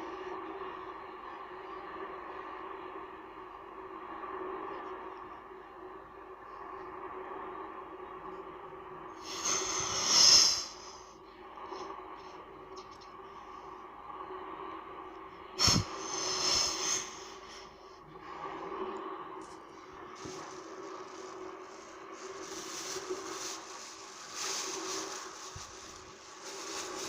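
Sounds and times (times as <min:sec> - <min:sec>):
moving water: 0:15.6 - 0:27.0.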